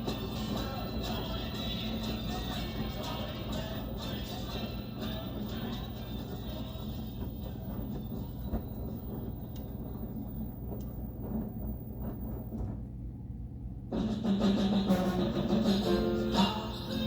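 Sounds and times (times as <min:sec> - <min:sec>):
washing machine rumble and hum: 0:00.0 - 0:17.0
drum knocking: 0:13.9 - 0:17.0.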